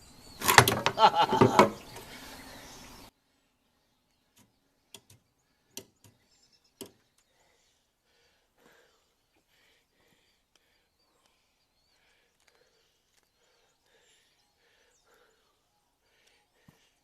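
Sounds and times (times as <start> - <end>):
metal clanking and knocking: 0.5 - 1.8
faint clicks: 10.5 - 14.0, 16.2 - 16.8.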